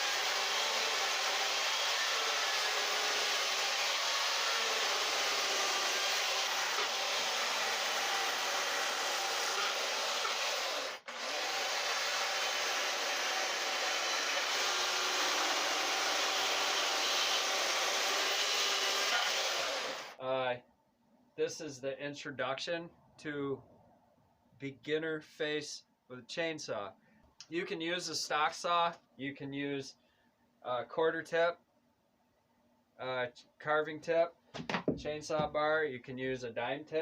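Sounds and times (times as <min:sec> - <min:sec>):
chainsaw cutting into a log: 0:00.0 - 0:20.2.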